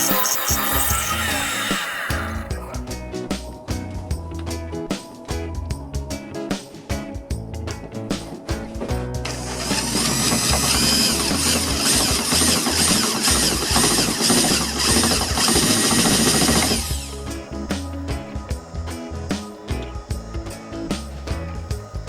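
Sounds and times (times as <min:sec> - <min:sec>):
drill press drilling: 0:00.0 - 0:02.5, 0:09.4 - 0:17.1
background music: 0:00.0 - 0:22.0.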